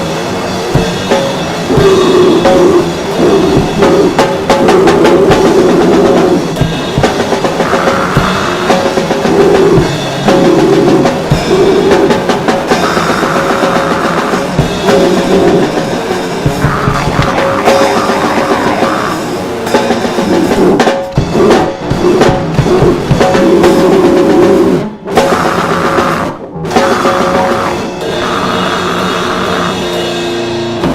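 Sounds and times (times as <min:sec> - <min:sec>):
rock band playing: 0:00.0 - 0:30.9
drum hits: 0:00.7 - 0:24.4.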